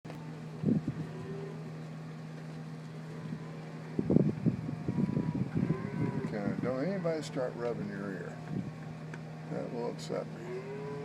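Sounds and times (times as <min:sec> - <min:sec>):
vehicle engine humming: 0:00.1 - 0:11.0.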